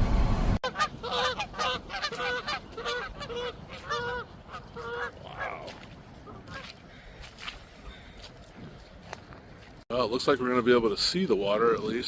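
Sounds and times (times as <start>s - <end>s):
geese honking: 0.6s - 5.6s.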